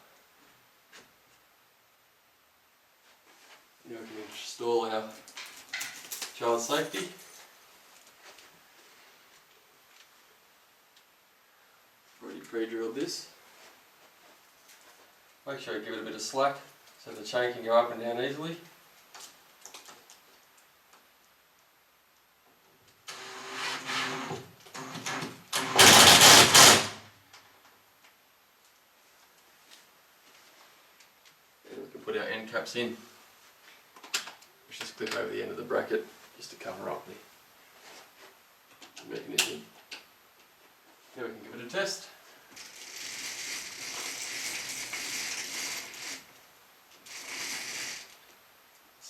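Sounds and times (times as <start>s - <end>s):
power drill driving a screw: 23.1s - 27.1s, 42.6s - 46.2s, 47.1s - 48.2s
drill clicks: 24.8s - 27.0s
roller blind chain mechanism whirring: 24.8s - 27.0s, 42.6s - 46.3s, 47.0s - 48.2s.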